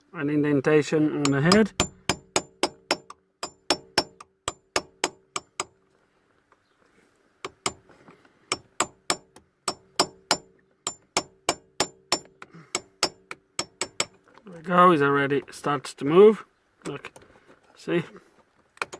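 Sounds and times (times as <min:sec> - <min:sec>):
hammer striking metal: 0:01.2 - 0:05.8, 0:08.5 - 0:14.2.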